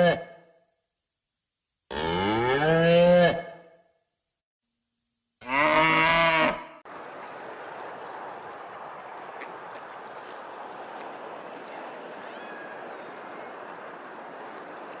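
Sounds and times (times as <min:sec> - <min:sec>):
cow mooing: 0:01.9 - 0:03.5, 0:05.4 - 0:06.8.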